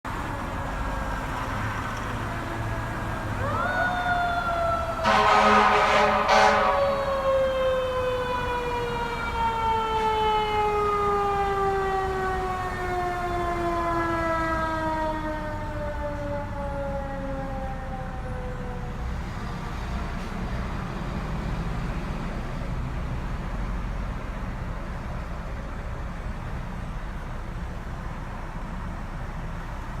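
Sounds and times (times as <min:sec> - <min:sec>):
truck engine and road noise: 0:00.0 - 0:30.0
fire engine siren: 0:00.1 - 0:22.7
loud horn blast: 0:05.0 - 0:07.1.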